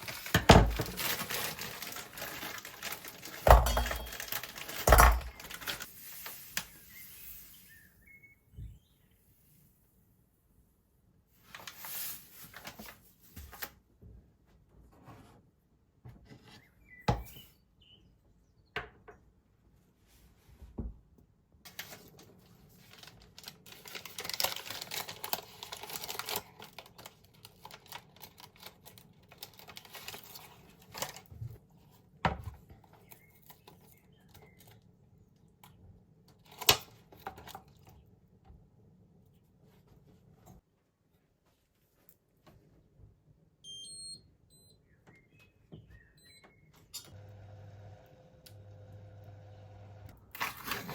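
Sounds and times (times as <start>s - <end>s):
rustling and scraping: 0.0s - 8.0s, 11.4s - 13.8s, 50.4s - 50.9s.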